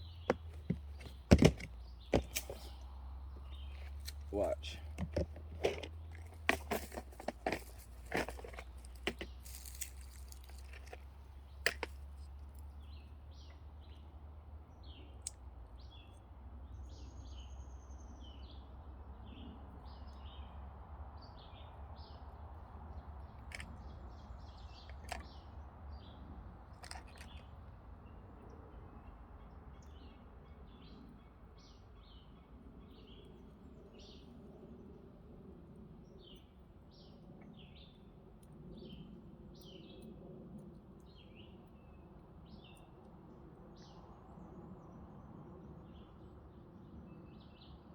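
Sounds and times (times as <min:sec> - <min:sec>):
birds chirping: 0:00.0 - 0:11.9.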